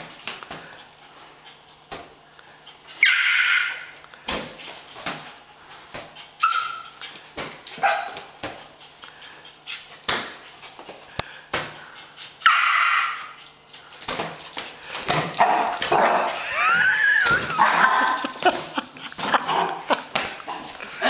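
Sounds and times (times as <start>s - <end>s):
puppy whining cry: 2.9s - 3.9s, 6.4s - 7.0s, 12.1s - 13.3s, 16.1s - 18.3s
puppy yipping and barking: 2.9s - 3.9s, 6.4s - 7.0s, 12.2s - 13.3s.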